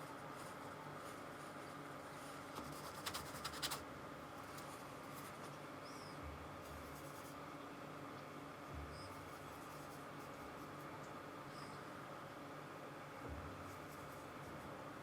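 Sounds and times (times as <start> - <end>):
paintbrush scratching on canvas: 6.7 - 7.4, 9.0 - 10.9.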